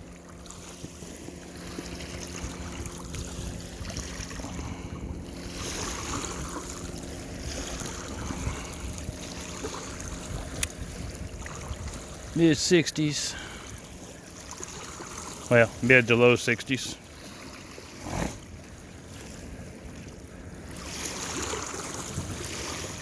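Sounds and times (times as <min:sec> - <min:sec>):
distant boat motor hum: 0:00.0 - 0:23.0
small waves lapping at shore: 0:00.0 - 0:23.0
wind on microphone: 0:02.3 - 0:12.4, 0:21.8 - 0:23.0.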